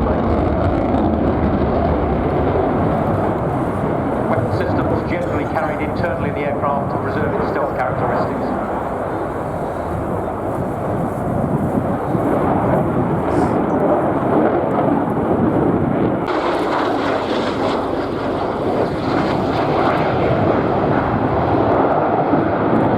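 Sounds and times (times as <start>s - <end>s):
fighter jet engine roar: 0.0s - 22.9s.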